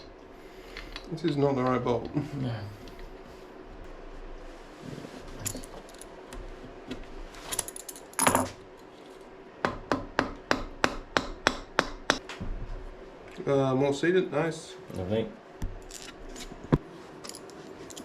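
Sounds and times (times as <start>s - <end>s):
metal tools clinking: 5.4s - 6.1s, 17.2s - 18.0s.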